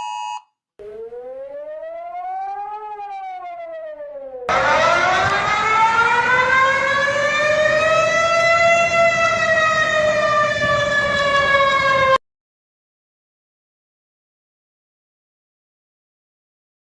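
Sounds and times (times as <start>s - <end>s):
warning siren wailing: 0.8s - 12.2s.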